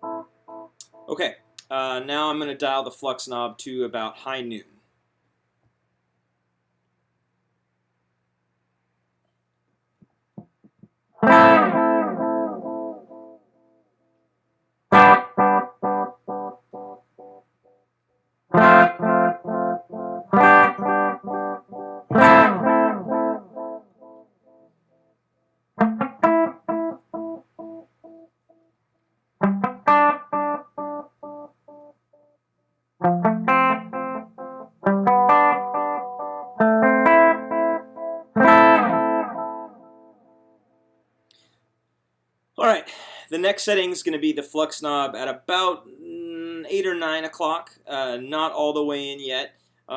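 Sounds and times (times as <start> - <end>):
electric guitar chords with echoes: 0.0 - 1.1, 11.2 - 13.8, 14.9 - 17.4, 18.5 - 24.7, 25.8 - 28.3, 29.4 - 31.9, 33.0 - 40.6.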